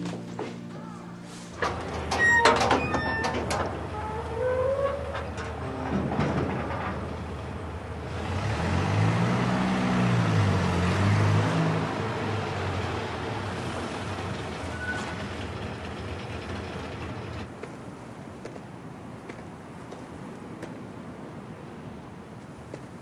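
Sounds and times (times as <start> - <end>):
vehicle passing: 7.3 - 14.5.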